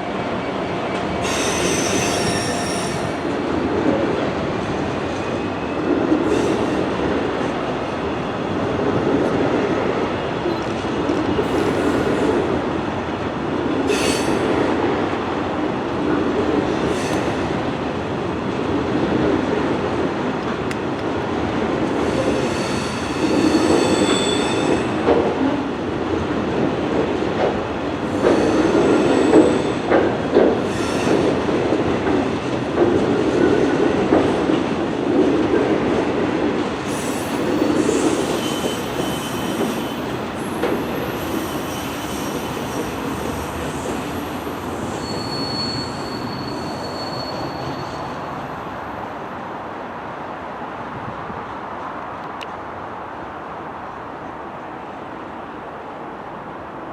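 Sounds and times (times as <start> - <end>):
train wheels rumbling on rails: 0.0 - 49.7
high-pitched wheel squeals: 1.2 - 3.2, 36.9 - 40.1, 41.1 - 48.6.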